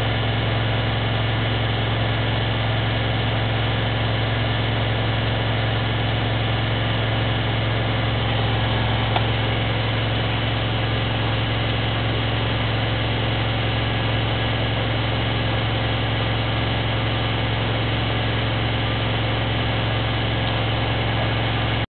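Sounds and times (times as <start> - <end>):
washing machine spinning: 3.6 - 21.9
small click: 9.1 - 9.3.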